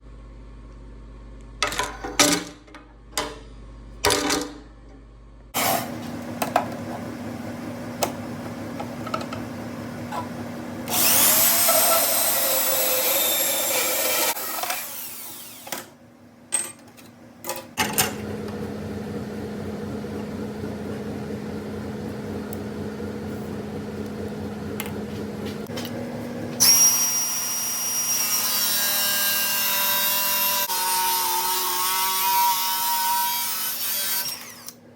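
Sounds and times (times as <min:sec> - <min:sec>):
power tool cutting metal: 0:10.9 - 0:15.9, 0:26.6 - 0:34.8.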